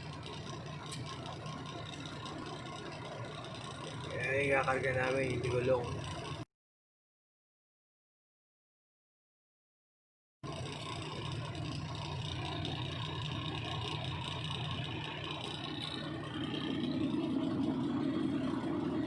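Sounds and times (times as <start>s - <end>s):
diesel engine running: 0.0s - 6.4s, 10.4s - 19.0s.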